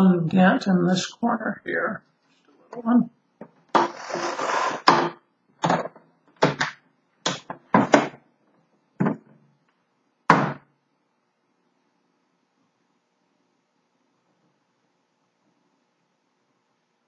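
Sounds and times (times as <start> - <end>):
case scraping rustle: 3.8 - 4.9.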